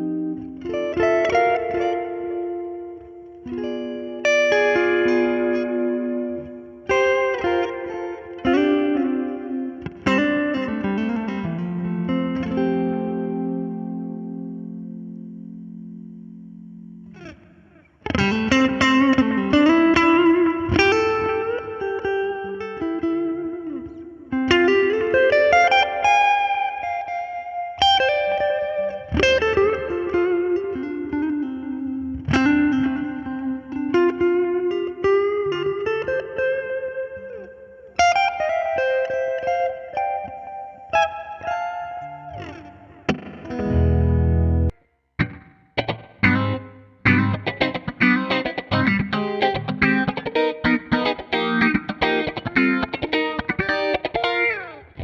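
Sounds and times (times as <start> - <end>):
electric guitar chords ringing: 0.0 - 55.0.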